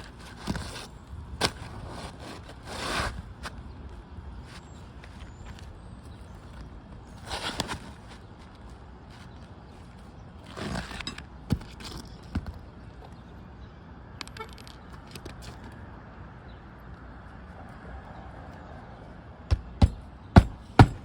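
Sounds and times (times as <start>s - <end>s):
sharp knocks: 19.5s - 21.0s.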